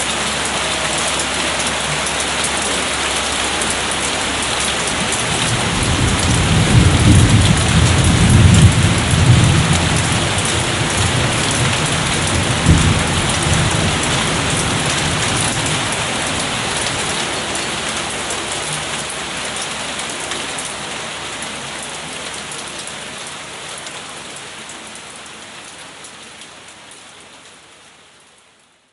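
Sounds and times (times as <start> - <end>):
steady rain: 0.0 - 28.9
distant thunder rumbling: 2.0 - 19.0
thunder clap: 5.0 - 17.4.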